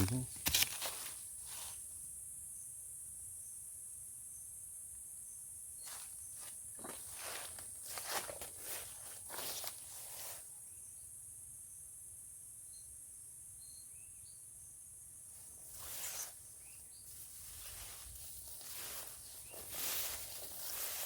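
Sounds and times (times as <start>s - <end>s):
footsteps rustling through vegetation: 0.0s - 1.9s, 5.8s - 10.6s, 15.4s - 21.0s
insects droning: 0.0s - 21.0s.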